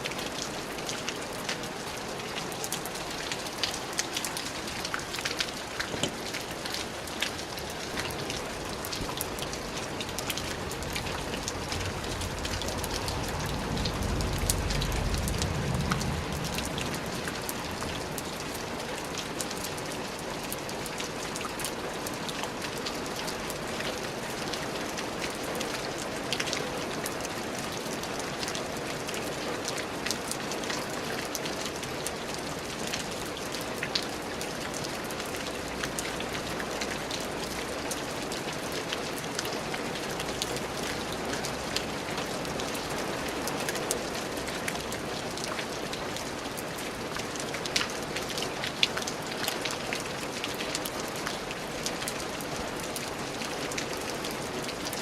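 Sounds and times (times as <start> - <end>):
steady rain falling: 0.0 - 55.0
low rumble: 11.6 - 18.2.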